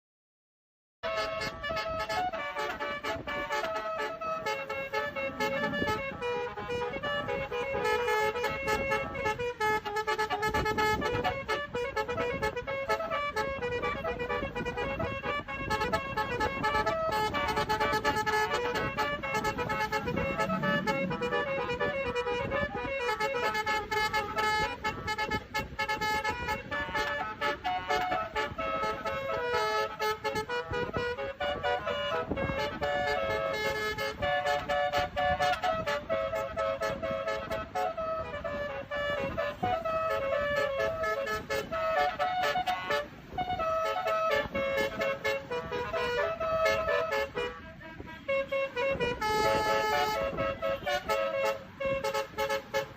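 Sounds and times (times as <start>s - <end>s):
multi-tone bus air horn: 1.0s - 52.9s
low rumble: 19.4s - 22.4s.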